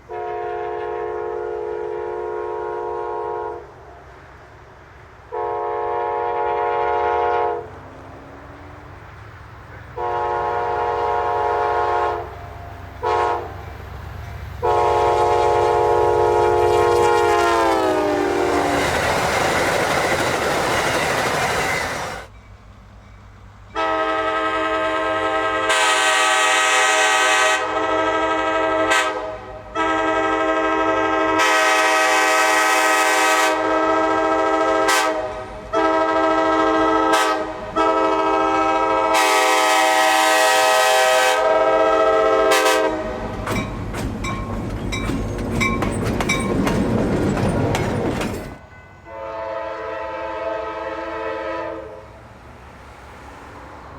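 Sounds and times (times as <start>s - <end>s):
locomotive horn blasts: 0.0s - 4.1s, 5.3s - 7.8s, 10.0s - 13.7s, 14.6s - 18.9s, 23.7s - 43.3s, 49.0s - 52.2s
passing train rushing: 0.0s - 53.9s.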